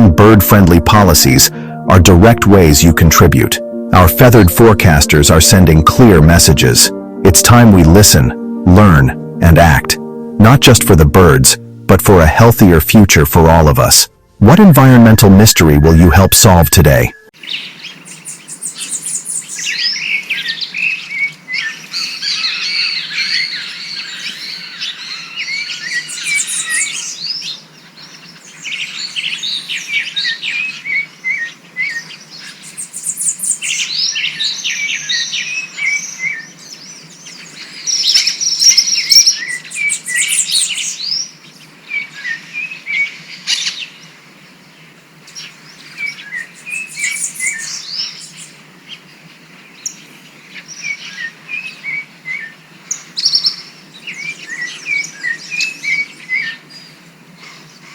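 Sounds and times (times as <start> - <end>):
songbirds chirping and trilling: 14.9 - 57.9.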